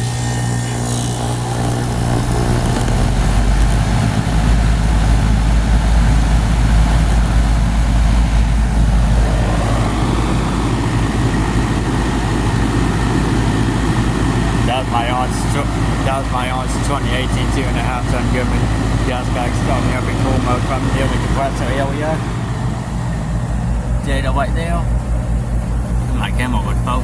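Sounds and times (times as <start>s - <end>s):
compressor and fan humming: 0.0s - 27.0s.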